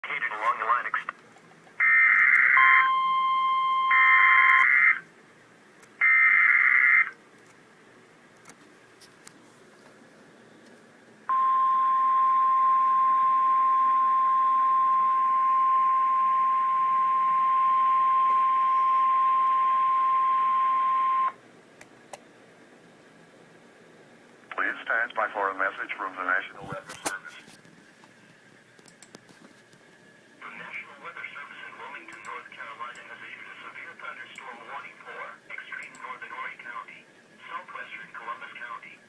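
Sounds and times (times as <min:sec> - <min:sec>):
radio hiss: 0:00.0 - 0:01.2, 0:24.5 - 0:27.6, 0:30.4 - 0:39.0
steady warning alarm tone: 0:01.8 - 0:05.0, 0:06.0 - 0:07.2, 0:11.3 - 0:21.4.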